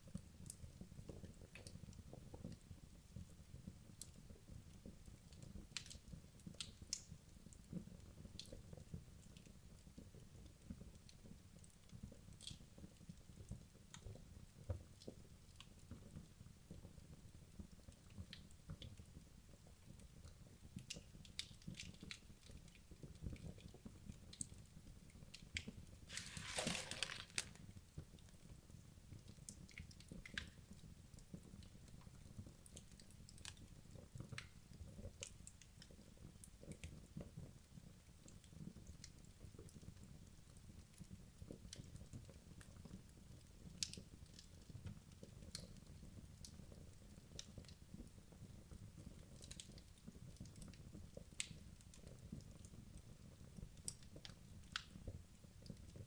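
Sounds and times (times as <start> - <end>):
fire crackling and popping: 25.3 - 28.2, 38.2 - 56.0.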